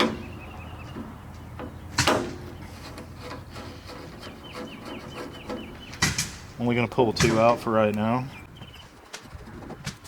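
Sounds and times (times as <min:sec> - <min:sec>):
metal scraping on metal: 0:02.3 - 0:06.6.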